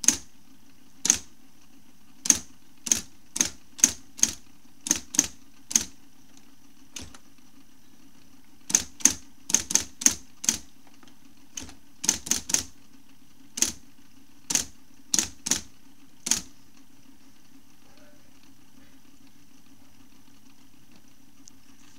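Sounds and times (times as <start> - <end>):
typewriter key strikes: 0.0 - 0.2, 1.0 - 1.3, 2.2 - 5.9, 8.7 - 10.6, 11.6 - 12.7, 13.6 - 13.8, 14.5 - 16.5
typewriter motor hum: 0.0 - 17.6.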